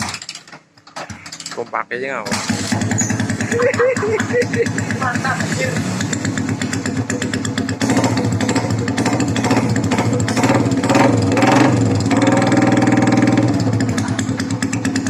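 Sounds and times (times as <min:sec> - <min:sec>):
motorcycle engine revving: 0:02.2 - 0:15.0.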